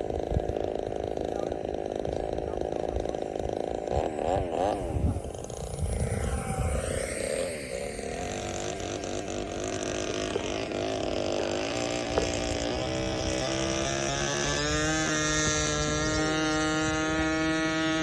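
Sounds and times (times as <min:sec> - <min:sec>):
electric ducted fans whining: 0:00.0 - 0:18.0.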